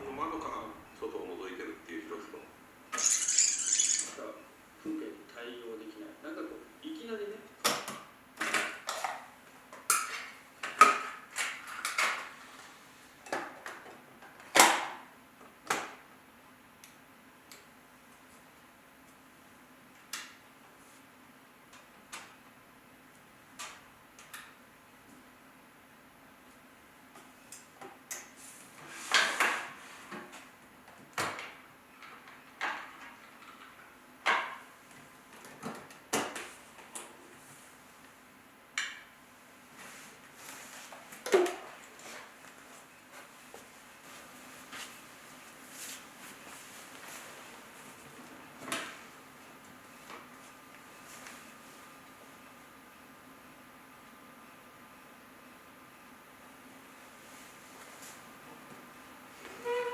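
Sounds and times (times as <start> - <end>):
faint steady hum: 0.0 - 14.4.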